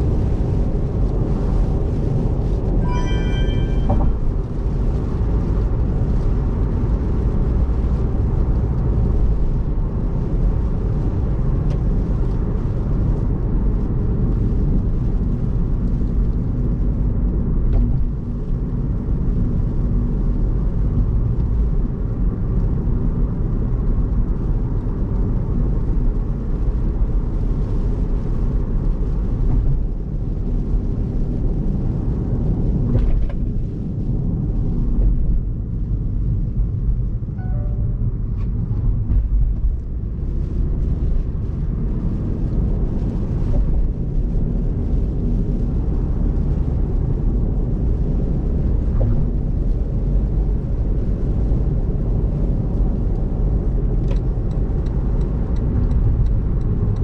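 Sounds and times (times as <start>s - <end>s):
heavy rain: 0.0s - 37.8s, 38.6s - 54.0s
car engine: 32.2s - 57.0s
tyres on wet road rumbling: 38.2s - 57.0s.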